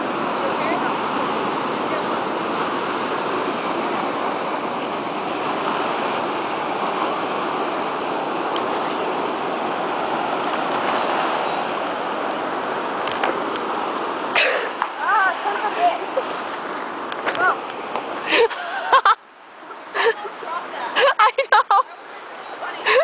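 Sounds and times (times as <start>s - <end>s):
ocean surf over rocks: 0.0s - 23.0s.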